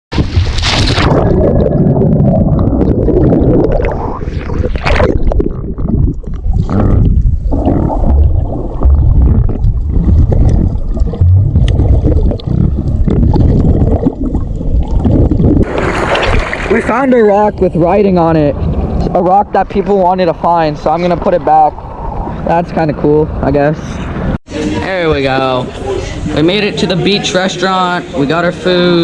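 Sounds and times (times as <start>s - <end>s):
underwater rumble and gurgling: 0.2s - 16.8s, 17.5s - 22.5s.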